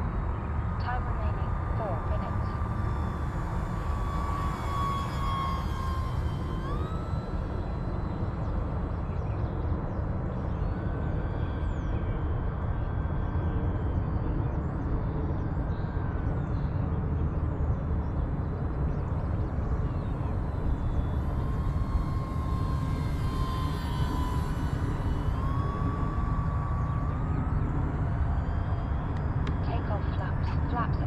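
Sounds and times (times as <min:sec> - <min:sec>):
steady low rumble: 0:00.0 - 0:31.0
model plane motor whining: 0:00.9 - 0:14.0, 0:18.3 - 0:29.7.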